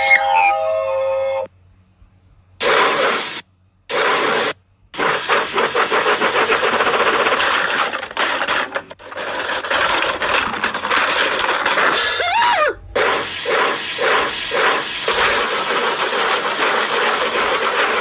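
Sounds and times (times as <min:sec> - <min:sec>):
cartoon steam engine chugging: 0:02.6 - 0:18.0.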